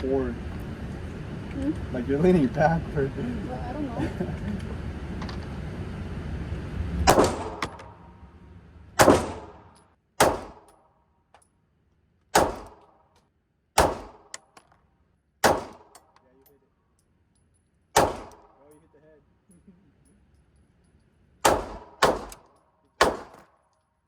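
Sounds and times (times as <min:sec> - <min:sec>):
pistol shots: 0:07.1 - 0:08.0, 0:09.0 - 0:10.7, 0:12.3 - 0:13.0, 0:13.8 - 0:14.5, 0:15.4 - 0:16.1, 0:18.0 - 0:18.6, 0:21.4 - 0:23.6.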